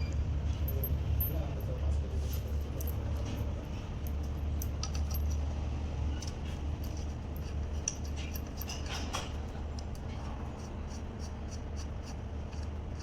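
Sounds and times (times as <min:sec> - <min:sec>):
steady low hum: 0:00.0 - 0:13.0
small metal parts clinking: 0:00.5 - 0:05.4, 0:06.2 - 0:09.4.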